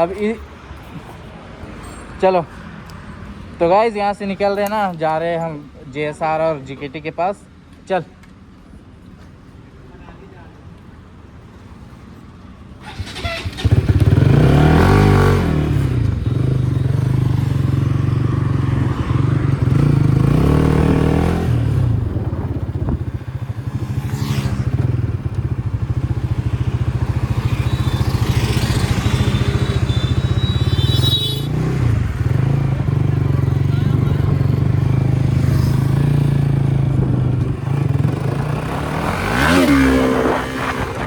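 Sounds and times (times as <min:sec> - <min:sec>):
motorcycle engine starting and revving: 0:12.8 - 0:41.0.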